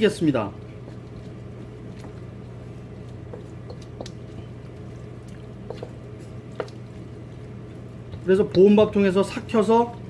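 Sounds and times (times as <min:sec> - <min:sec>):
steady low hum: 0:00.0 - 0:10.0
light clicks and taps: 0:03.3 - 0:04.2.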